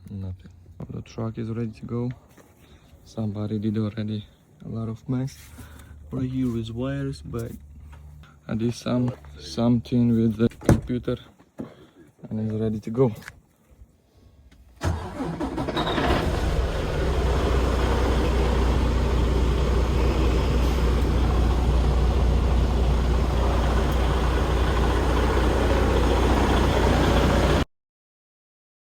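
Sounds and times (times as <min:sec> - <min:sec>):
diesel truck engine starting and idling: 0:14.8 - 0:27.7.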